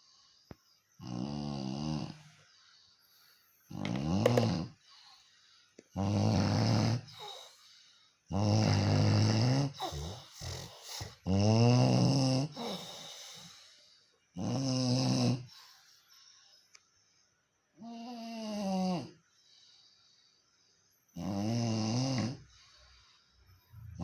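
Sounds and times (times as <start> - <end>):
quiet breaths: 0.0 - 21.3, 22.0 - 24.0
loud snoring: 1.0 - 2.2, 3.7 - 4.8, 5.9 - 7.5, 8.3 - 13.5, 14.4 - 15.6, 17.8 - 19.2, 21.2 - 22.5.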